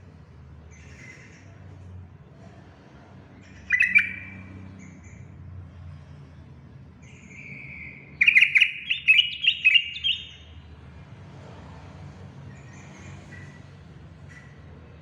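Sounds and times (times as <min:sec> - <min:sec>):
faint bird calls: 0:00.7 - 0:01.8, 0:03.4 - 0:05.3, 0:07.0 - 0:10.6
bird singing bubbling notes: 0:03.7 - 0:04.3, 0:08.2 - 0:10.4.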